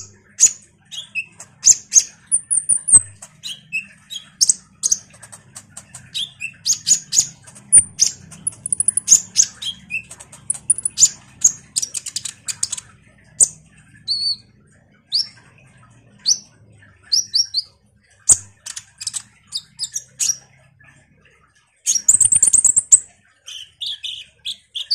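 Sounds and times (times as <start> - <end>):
bird chirping and trilling: 0.0 - 21.0, 21.7 - 24.9
faint low hum: 0.0 - 24.6.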